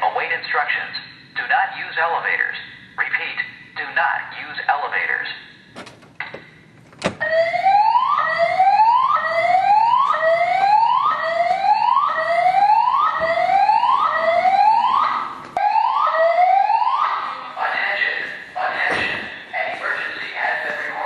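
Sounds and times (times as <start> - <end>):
fire alarm whoop tone: 7.2 - 17.2.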